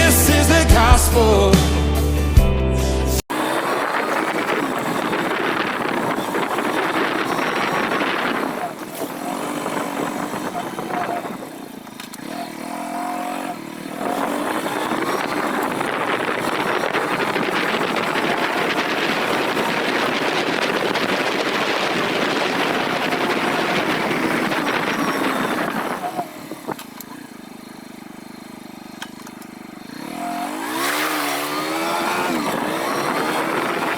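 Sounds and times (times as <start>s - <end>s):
motor running: 3.3s - 33.9s
wind rushing: 3.4s - 11.7s, 14.0s - 26.8s, 30.7s - 33.9s.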